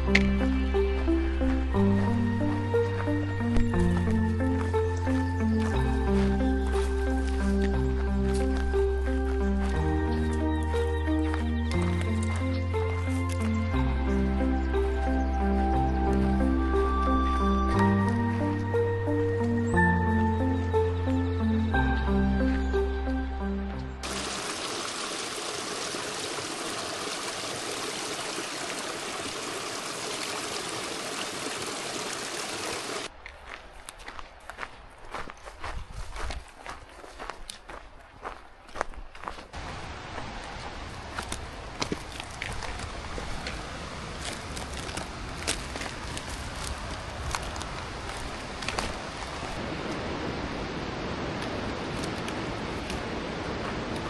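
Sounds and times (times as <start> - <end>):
footsteps crunching on dirt: 0.1 - 20.0, 33.1 - 50.0
creek water rushing: 22.8 - 33.2, 39.5 - 54.0
steady rushing noise: 42.8 - 54.0.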